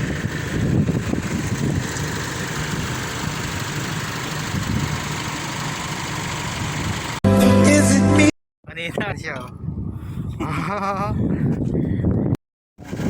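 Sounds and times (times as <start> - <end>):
engine idling: 0.0 - 7.2.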